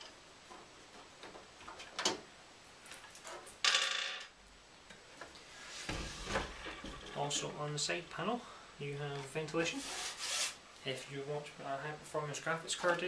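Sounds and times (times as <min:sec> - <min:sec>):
rubbing: 0:09.7 - 0:10.6.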